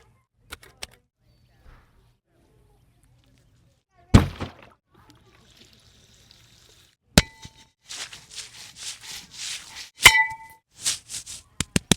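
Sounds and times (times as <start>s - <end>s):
scraping through soil: 7.4s - 11.7s
metal garden tool clanging: 9.9s - 10.6s.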